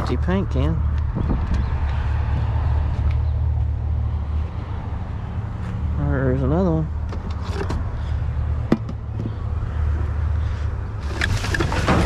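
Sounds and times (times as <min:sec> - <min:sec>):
junk clattering: 0:11.0 - 0:12.0.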